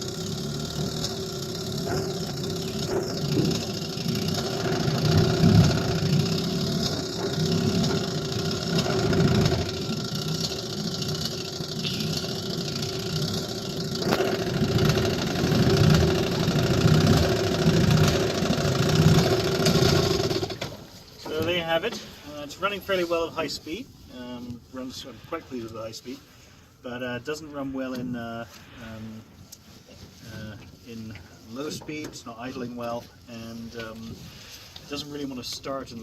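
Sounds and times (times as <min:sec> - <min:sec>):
outboard motor running: 0:00.0 - 0:22.4, 0:29.6 - 0:34.9.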